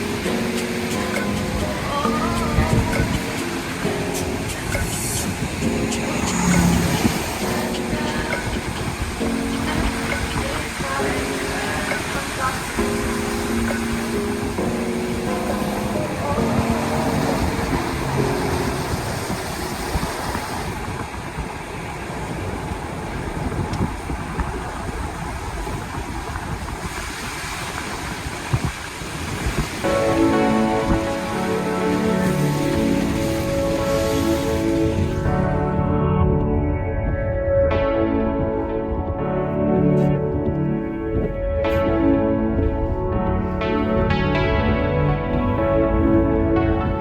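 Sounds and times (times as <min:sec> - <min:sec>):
slow ambient instrumental music: 0:00.0 - 0:21.2, 0:28.8 - 0:47.0
road and tyre noise: 0:00.0 - 0:36.6.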